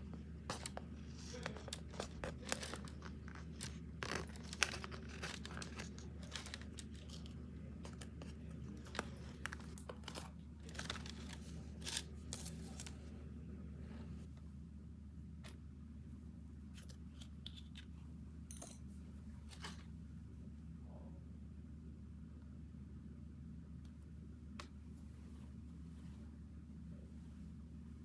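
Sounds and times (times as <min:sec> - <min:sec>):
material crinkling and tearing: 0:00.0 - 0:13.1
steady low hum: 0:00.0 - 0:28.0.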